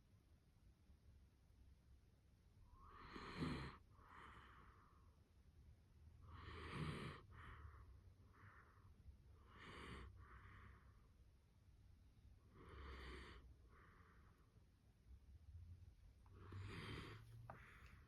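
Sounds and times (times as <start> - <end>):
dog snoring: 2.8 - 4.4, 6.3 - 7.6, 9.4 - 10.2, 12.5 - 13.4, 16.4 - 17.8.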